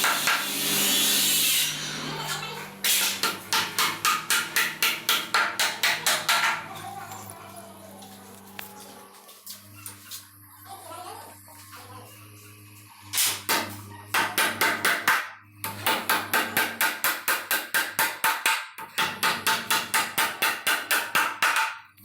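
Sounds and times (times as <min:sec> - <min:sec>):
hammer striking rapidly: 0:02.8 - 0:06.8, 0:13.4 - 0:21.8.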